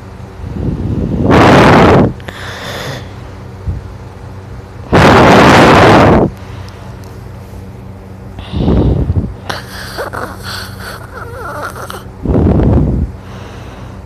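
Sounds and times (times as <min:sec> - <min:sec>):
person snoring loudly: 0:09.5 - 0:12.1.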